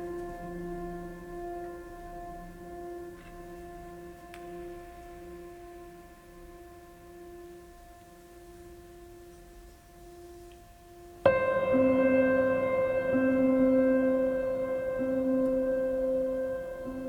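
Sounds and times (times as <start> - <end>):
held musical chord: 11.3 - 17.0.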